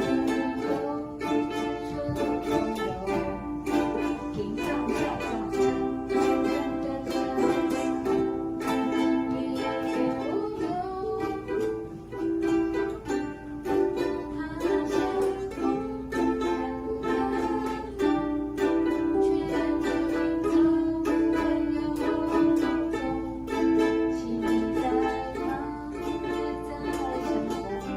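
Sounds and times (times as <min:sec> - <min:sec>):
ukulele strumming chords and melody: 0:00.0 - 0:27.9.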